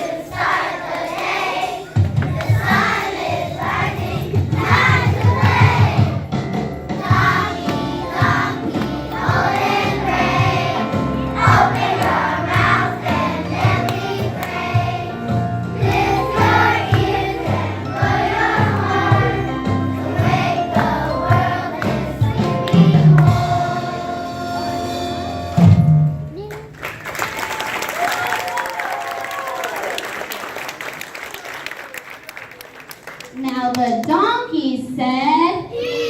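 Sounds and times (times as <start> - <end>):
children singing together: 0.0 - 6.2, 6.9 - 24.9
backing music: 0.0 - 26.5.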